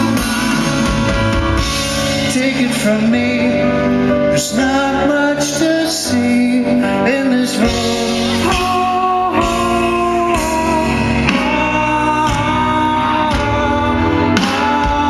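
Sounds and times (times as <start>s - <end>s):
electric guitar: 0.0s - 15.0s
person singing long notes: 4.6s - 15.0s.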